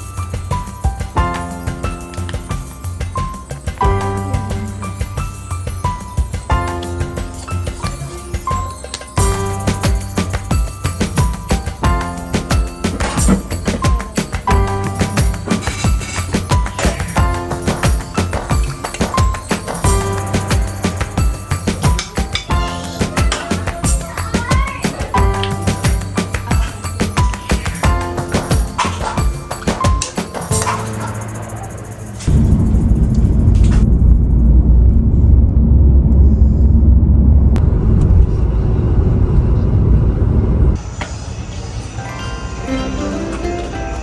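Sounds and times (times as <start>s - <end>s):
background music with beat: 0.0s - 32.4s
loud low rumble: 31.2s - 41.5s.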